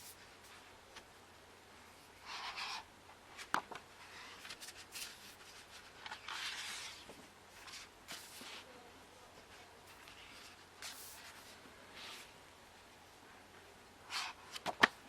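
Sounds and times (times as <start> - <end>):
book pages turning: 3.4 - 8.6, 14.1 - 15.0.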